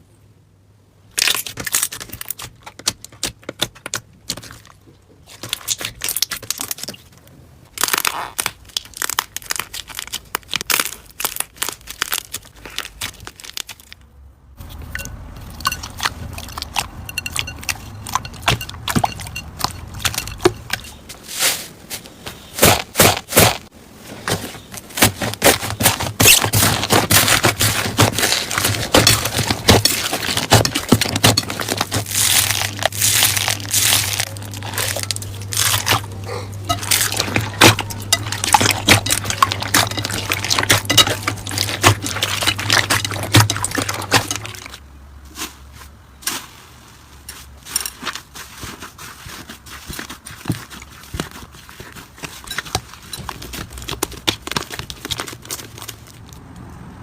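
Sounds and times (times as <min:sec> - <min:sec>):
low steady hum: 0:03.8 - 0:22.8, 0:23.4 - 0:46.2
slime crackling and popping: 0:07.7 - 0:14.0, 0:25.0 - 0:44.8.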